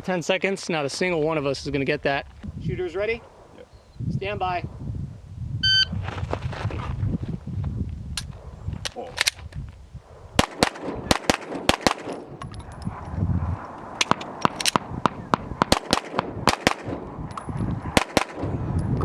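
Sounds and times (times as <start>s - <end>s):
pistol gunfire: 10.4s - 12.3s, 14.0s - 17.0s, 17.9s - 18.5s.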